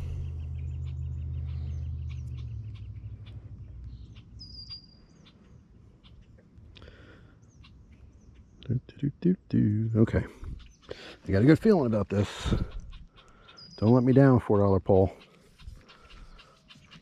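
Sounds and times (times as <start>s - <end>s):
low rumble: 0.0s - 4.5s
small birds chirping: 0.0s - 17.0s.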